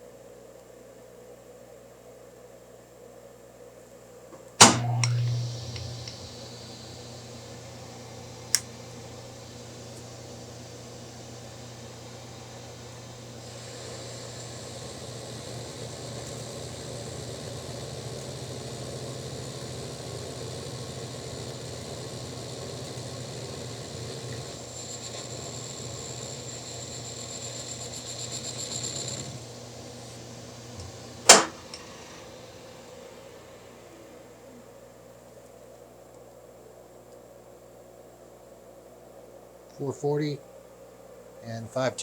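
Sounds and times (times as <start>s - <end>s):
sharp click: 4.4s - 10.9s, 30.8s - 31.9s
metal lathe running: 4.6s - 34.1s
high whine of cutting: 4.6s - 35.2s.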